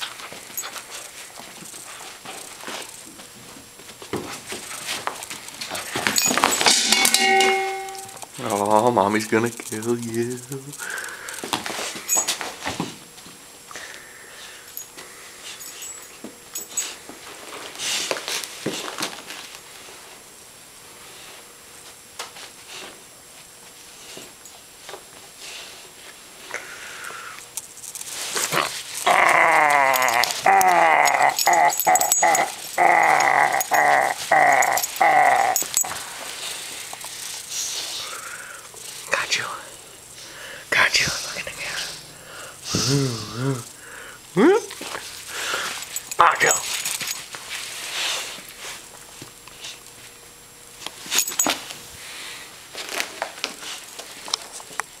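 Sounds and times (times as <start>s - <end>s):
puppy play-growling: 27.9s - 37.9s.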